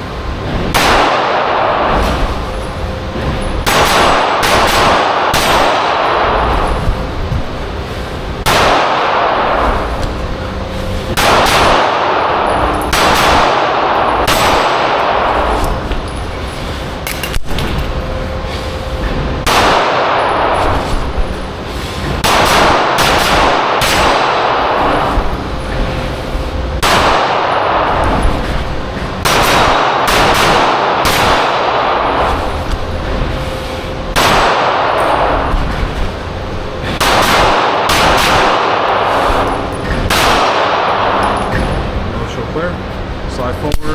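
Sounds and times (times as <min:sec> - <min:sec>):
airsoft pistol shots: 0:00.7 - 0:02.4, 0:03.6 - 0:06.8, 0:08.4 - 0:09.9, 0:11.2 - 0:15.8, 0:19.4 - 0:20.8, 0:22.2 - 0:25.3, 0:26.8 - 0:28.1, 0:29.2 - 0:32.4, 0:34.2 - 0:35.5, 0:37.0 - 0:41.2
bbs clanging on steel targets: 0:37.0 - 0:41.9.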